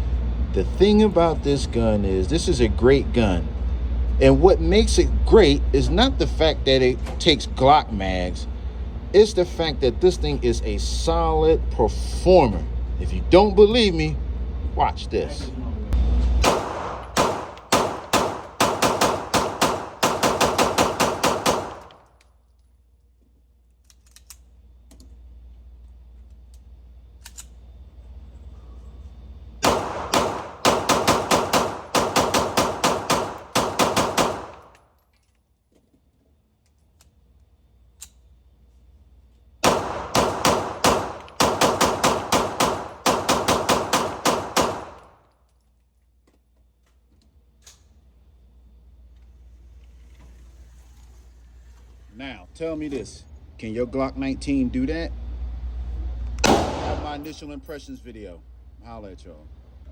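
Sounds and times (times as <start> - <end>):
pistol shots: 16.4 - 22.1, 29.6 - 34.8, 39.6 - 45.2, 56.4 - 57.3.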